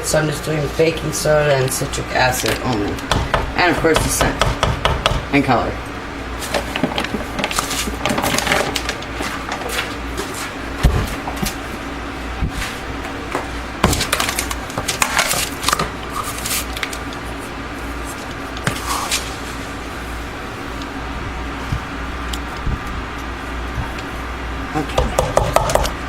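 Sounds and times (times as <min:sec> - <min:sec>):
room fan humming: 0:00.0 - 0:26.0
containers and utensils knocking: 0:24.9 - 0:26.0.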